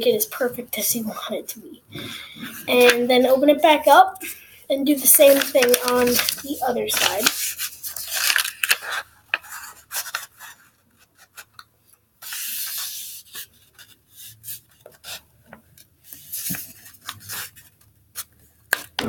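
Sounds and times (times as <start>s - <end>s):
rubbing paper fold flat: 4.9s - 11.6s, 12.2s - 19.0s
paper crinkling and tapping: 5.0s - 19.0s.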